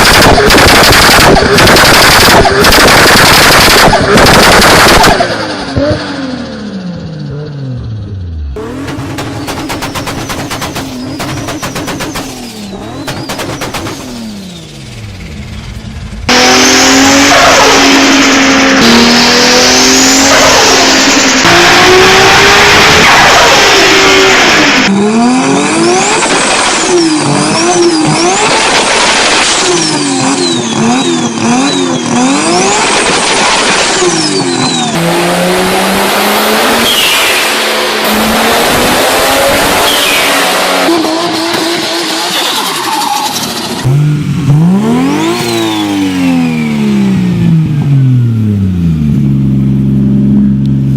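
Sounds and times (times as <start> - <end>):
loud rushing noise: 0.0 - 5.5, 8.6 - 24.9
car engines revving: 0.0 - 50.9.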